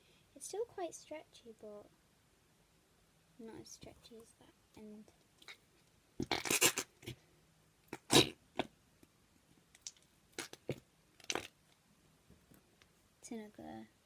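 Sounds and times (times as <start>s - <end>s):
slime squishing and popping: 9.8s - 11.5s.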